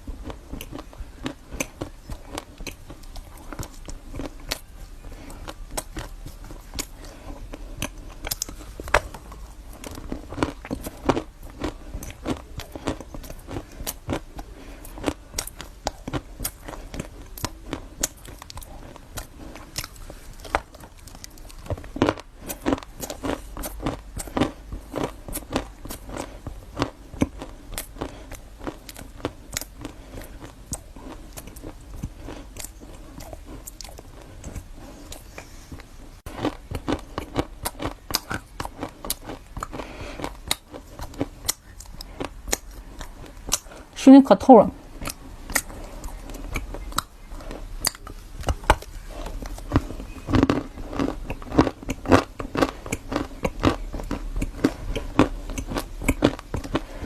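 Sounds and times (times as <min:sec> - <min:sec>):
person chewing crunchy food: 0:00.0 - 0:44.0, 0:44.8 - 0:57.0.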